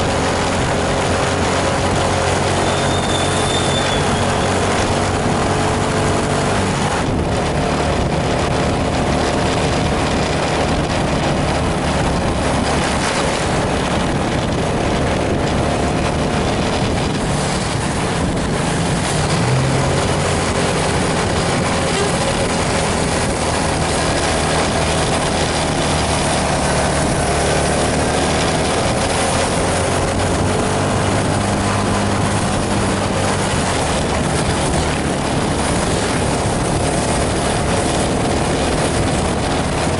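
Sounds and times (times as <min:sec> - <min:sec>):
bus diesel engine running: 0:00.0 - 0:39.9
tyre and road noise hiss: 0:00.0 - 0:39.9.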